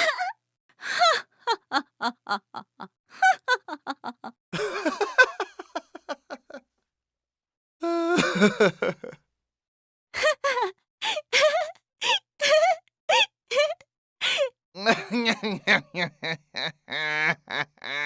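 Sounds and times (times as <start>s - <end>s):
comic laughter effects: 1.5s - 6.6s, 14.8s - 18.0s.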